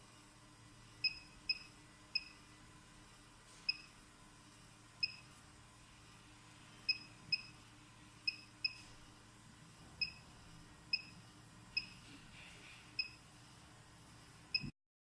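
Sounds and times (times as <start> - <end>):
faint steady hum: 0.0 - 14.7.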